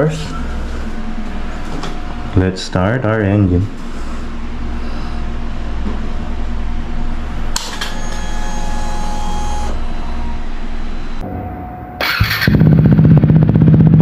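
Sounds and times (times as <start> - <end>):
high mechanical whine: 0.0 - 14.0
steady low hum: 0.0 - 14.0
motorcycle engine firing: 12.0 - 14.0.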